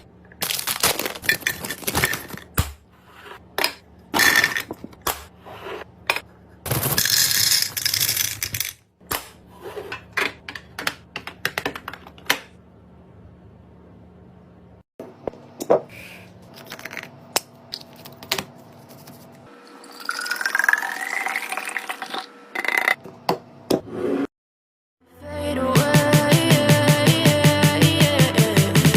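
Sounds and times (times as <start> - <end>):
liquid pouring into container: 19.8 - 22.3.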